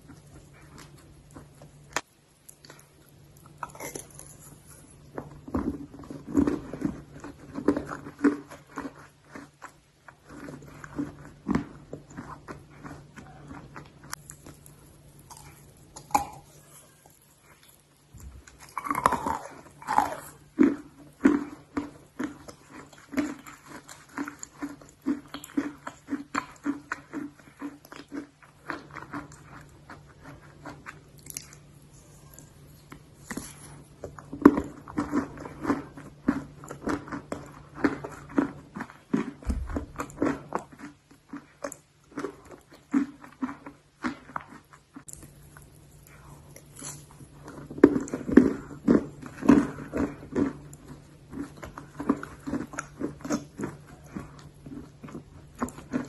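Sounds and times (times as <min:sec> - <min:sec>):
faint steady hum: 0:00.0 - 0:56.0
rhythmic chewing: 0:00.0 - 0:56.0
crunching hard clay: 0:33.2 - 0:45.3.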